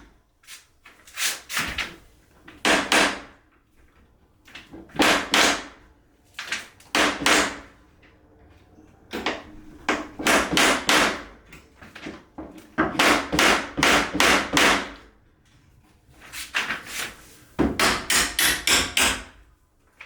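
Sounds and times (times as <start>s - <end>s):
hammer striking door hinge: 17.6s - 19.4s.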